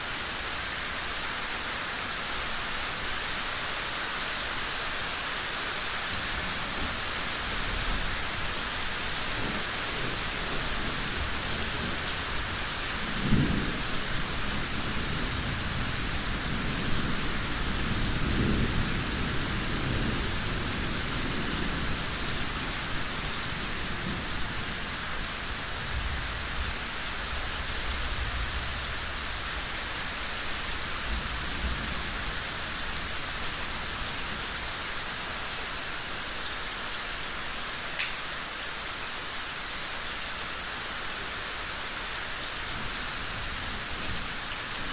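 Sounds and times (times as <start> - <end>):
heavy rain hissing: 0.0 - 44.9
low rolling thunder: 9.3 - 24.9.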